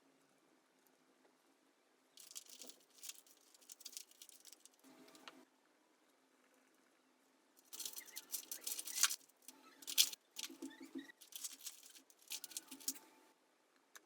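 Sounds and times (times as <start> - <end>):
scratching and scraping of small parts: 2.2 - 5.4, 7.6 - 13.2.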